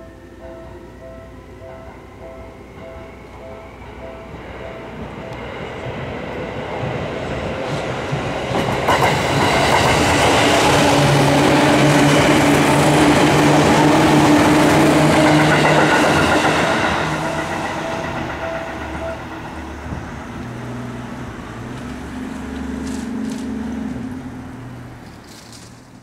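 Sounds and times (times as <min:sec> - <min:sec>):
level crossing warning bell: 0:00.0 - 0:05.8, 0:12.2 - 0:21.0
train motor hum: 0:01.1 - 0:26.0
train wheel clatter: 0:05.4 - 0:20.6.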